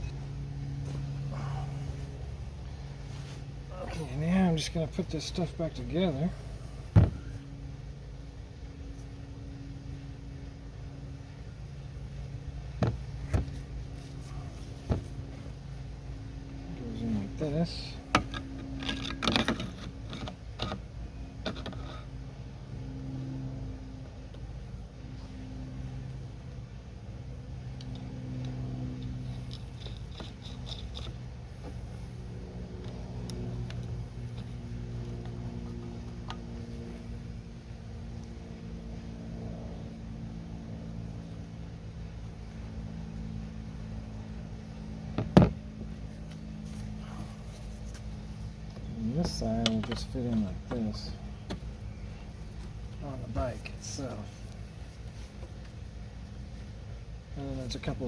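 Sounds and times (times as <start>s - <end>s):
steady low hum: 0.0s - 58.0s
metal pipe parts clinking: 18.2s - 20.8s, 29.5s - 31.2s.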